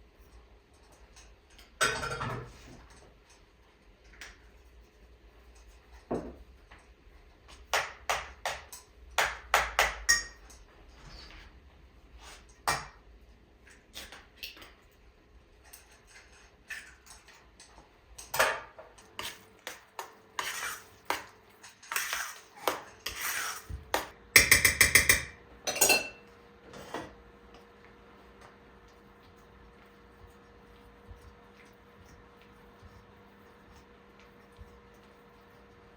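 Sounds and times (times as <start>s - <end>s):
dishes and utensils clattering: 1.6s - 3.0s, 24.4s - 27.1s.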